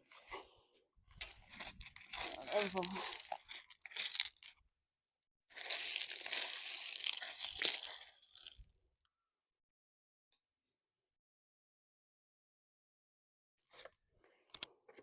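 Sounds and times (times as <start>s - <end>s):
rocks crunching and grinding: 1.2s - 4.6s, 5.5s - 8.7s.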